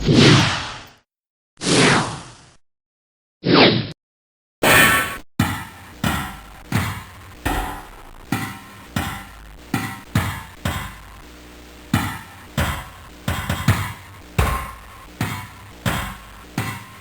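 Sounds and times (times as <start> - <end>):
heavy thudding hits with ringing: 4.6 - 11.3, 11.9 - 17.0.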